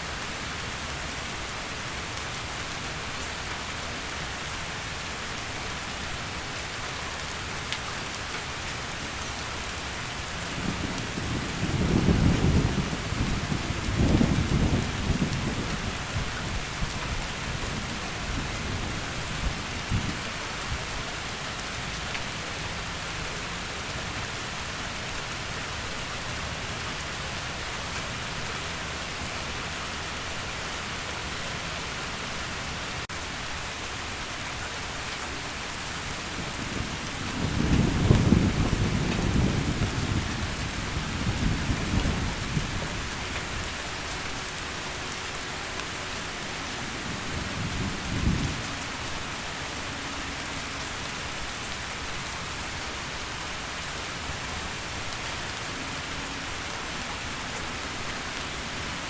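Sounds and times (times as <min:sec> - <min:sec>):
heavy rain falling: 0:00.0 - 0:59.0
thunder rumbling: 0:10.5 - 0:20.2, 0:36.3 - 0:43.7.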